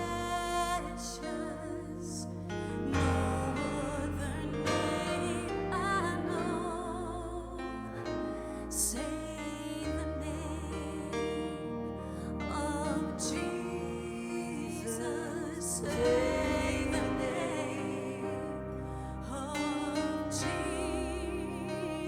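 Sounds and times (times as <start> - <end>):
bass line: 0.0 - 11.1
person singing with vibrato: 0.0 - 22.0.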